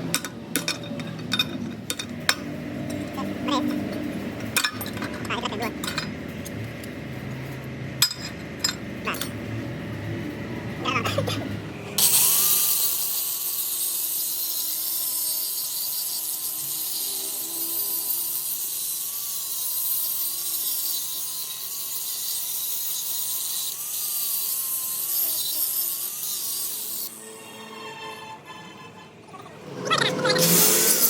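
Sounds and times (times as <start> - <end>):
angle grinder grinding steel: 8.0 - 9.4, 10.8 - 31.0.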